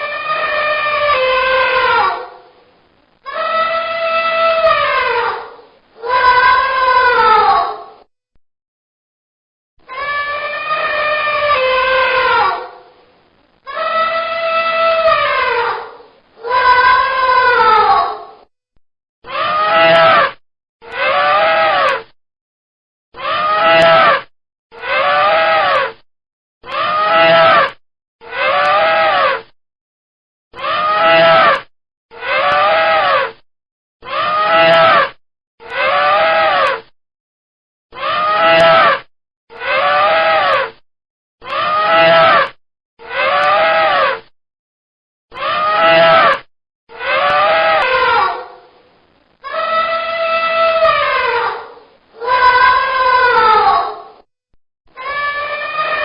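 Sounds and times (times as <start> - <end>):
elephant trumpeting: 46.9 - 48.5.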